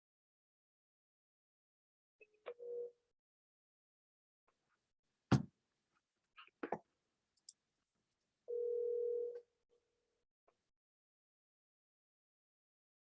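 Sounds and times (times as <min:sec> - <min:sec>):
steady telephone tone: 0:02.5 - 0:03.0, 0:08.5 - 0:09.5.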